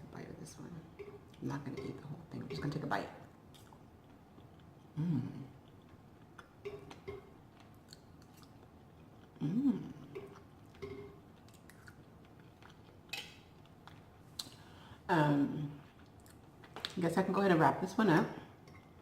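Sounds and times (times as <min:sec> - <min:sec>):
person chewing food: 0:03.5 - 0:14.8, 0:15.8 - 0:16.9
person humming: 0:05.0 - 0:05.5, 0:09.4 - 0:10.1.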